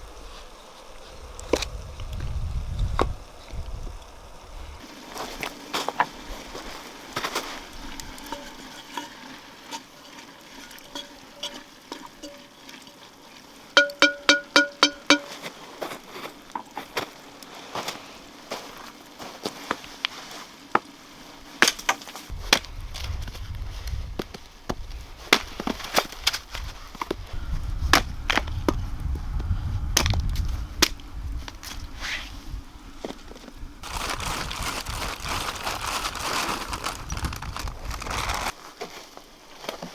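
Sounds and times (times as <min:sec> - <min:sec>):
meat sizzling in a pan: 0:04.8 - 0:22.4
metal utensil clicking on pan: 0:13.8 - 0:15.4
plucked-string music: 0:13.8 - 0:15.4.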